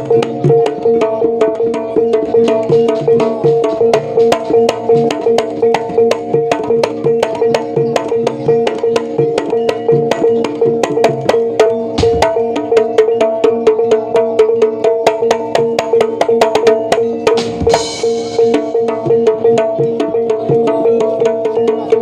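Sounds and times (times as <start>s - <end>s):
held notes: 9.5s - 21.3s
fast drum strokes: 12.0s - 12.9s, 17.3s - 20.7s.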